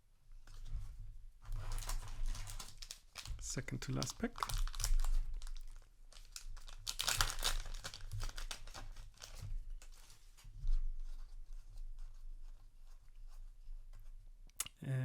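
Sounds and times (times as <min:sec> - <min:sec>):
wrapper tearing and crinkling: 0:01.6 - 0:10.0.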